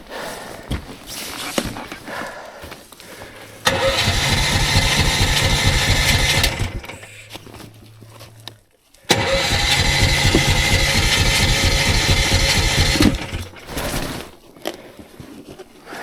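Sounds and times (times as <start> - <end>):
rustling: 0.0 - 16.0
snowmobile engine revving and idling: 3.6 - 8.5, 9.1 - 14.2.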